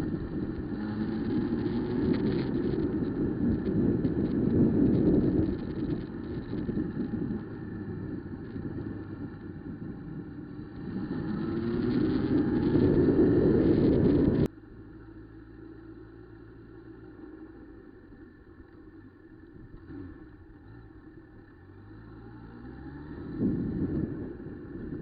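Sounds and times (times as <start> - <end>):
wind noise on microphone: 0.0 - 14.5, 23.1 - 25.0
motorcycle engine accelerating: 0.0 - 25.0.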